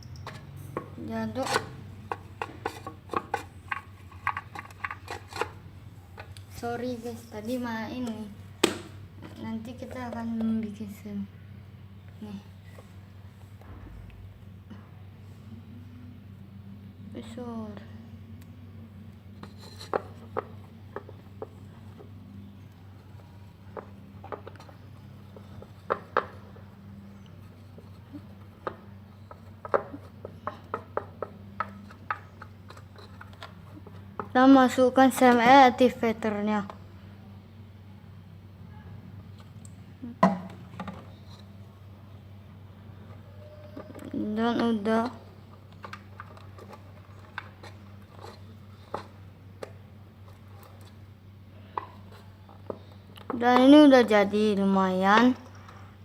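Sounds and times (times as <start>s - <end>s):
steady low hum: 0.0s - 56.0s
stick scraping and tapping container: 0.2s - 5.6s, 19.4s - 22.1s, 23.1s - 26.5s, 27.4s - 34.4s, 43.1s - 51.0s.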